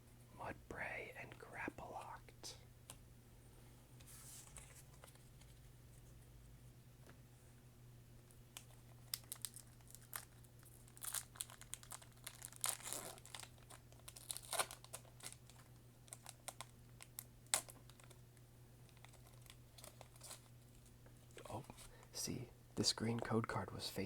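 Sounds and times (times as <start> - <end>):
foil wrapper crinkling and tearing: 8.6 - 18.2, 18.9 - 20.5.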